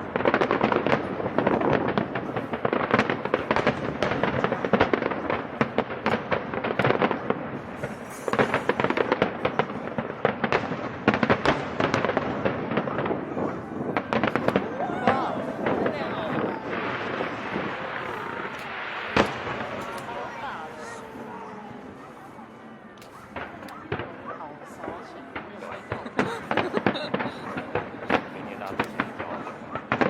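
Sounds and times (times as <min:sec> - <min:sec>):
fireworks bangs and crackling: 0:00.0 - 0:30.0.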